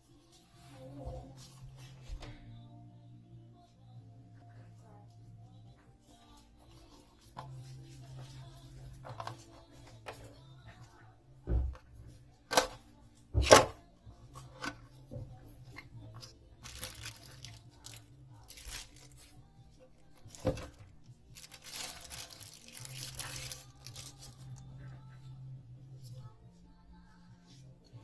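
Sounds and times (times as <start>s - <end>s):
packaging snapping: 16.6s - 19.2s, 21.4s - 24.5s
packaging tearing and rustling: 16.6s - 19.2s, 21.4s - 24.5s.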